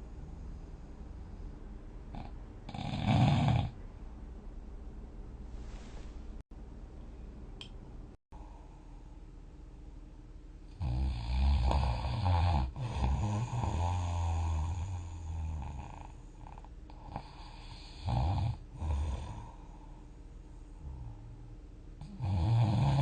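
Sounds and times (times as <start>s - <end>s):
person snoring heavily: 2.1s - 3.8s, 10.8s - 19.7s, 22.0s - 23.0s.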